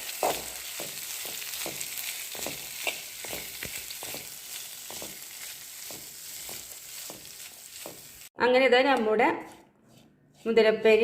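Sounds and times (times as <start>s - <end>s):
food sizzling in hot oil: 0.0s - 8.4s
spoon scraping a pan: 0.1s - 8.3s, 9.3s - 11.0s.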